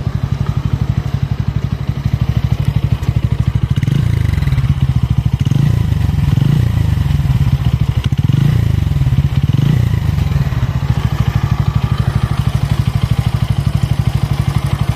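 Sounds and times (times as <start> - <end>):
motorcycle engine idling: 0.0 - 14.9.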